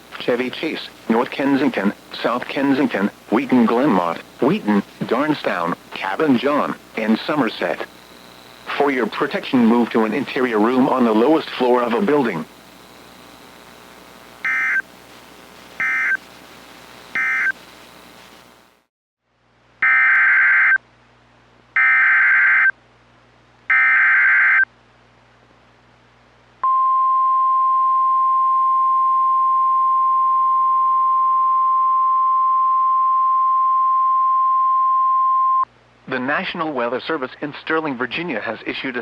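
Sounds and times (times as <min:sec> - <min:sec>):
buzzing digital data bursts: 0:05.2 - 0:18.8
steady single-pitch alarm tone: 0:14.4 - 0:14.8, 0:15.8 - 0:16.2, 0:17.2 - 0:17.6, 0:19.8 - 0:20.8, 0:21.8 - 0:22.7, 0:23.7 - 0:24.6.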